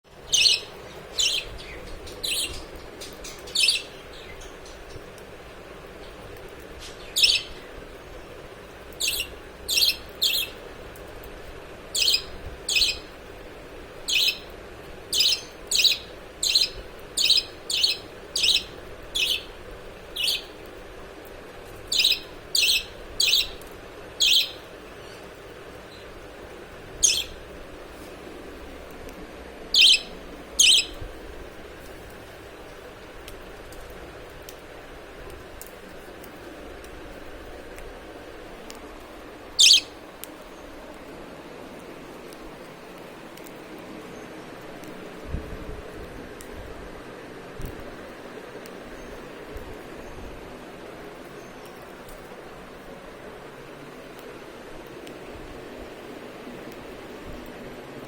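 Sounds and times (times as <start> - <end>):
parrot chick chirping: 0.3 - 4.4, 7.1 - 7.6, 9.0 - 10.6, 11.9 - 13.1, 14.0 - 14.5, 15.1 - 19.6, 20.2 - 20.6, 21.9 - 23.6, 24.2 - 24.6, 27.0 - 27.4, 29.7 - 31.0, 39.6 - 40.0.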